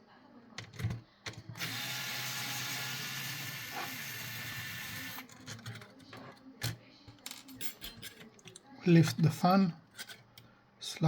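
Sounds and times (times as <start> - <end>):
small electric motor whirring: 1.6 - 5.2.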